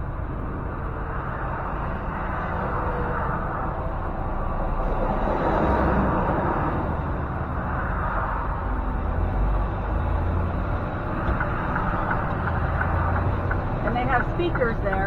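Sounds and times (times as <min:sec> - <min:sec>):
road noise: 0:00.0 - 0:15.0
truck engine running: 0:08.5 - 0:15.0.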